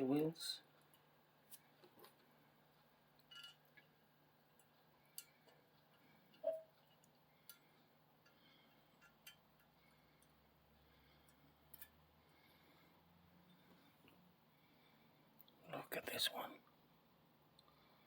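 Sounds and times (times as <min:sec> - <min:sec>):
small metal parts clicking: 0:03.2 - 0:03.9, 0:11.3 - 0:12.0.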